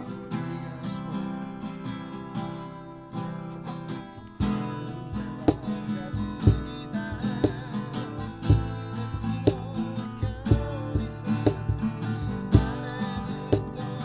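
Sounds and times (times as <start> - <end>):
acoustic guitar strumming: 0.0 - 14.0
low beat thumps: 4.4 - 13.9.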